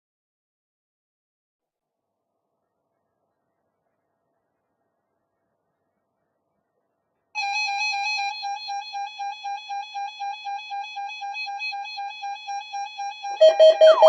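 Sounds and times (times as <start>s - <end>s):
buzzy electronic beep tone: 13.4s - 14.0s.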